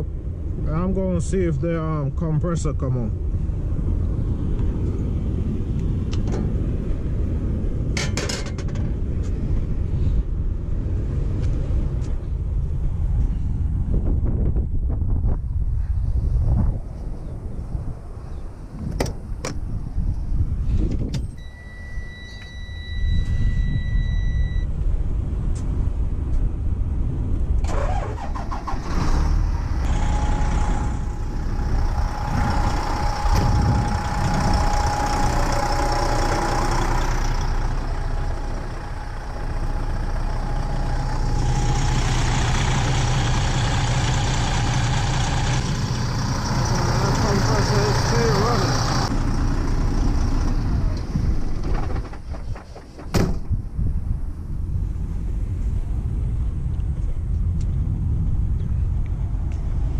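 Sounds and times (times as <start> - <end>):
diesel truck engine running: 27.0 - 59.9
steady whine: 29.6 - 52.8.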